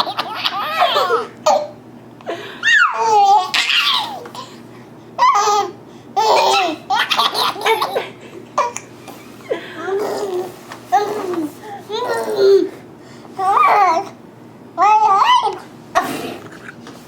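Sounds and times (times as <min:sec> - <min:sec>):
baby laughing: 0:00.0 - 0:01.7, 0:02.6 - 0:04.5, 0:05.2 - 0:10.4
adult fake sneezes: 0:15.9 - 0:16.5.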